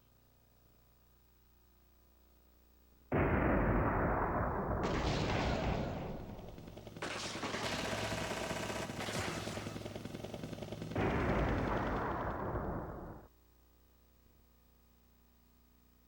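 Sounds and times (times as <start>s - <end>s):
synthesized gunshot blasts: 3.1s - 10.1s, 10.9s - 13.3s
machine-gun fire rattle: 3.1s - 13.3s.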